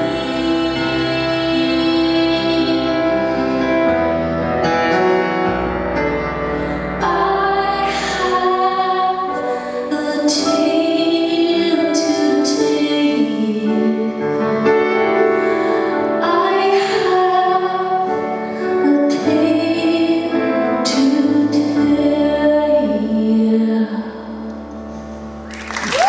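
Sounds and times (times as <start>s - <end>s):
woman singing: 0.0s - 3.6s, 7.0s - 14.9s, 15.9s - 24.5s
piano chords: 0.0s - 26.0s.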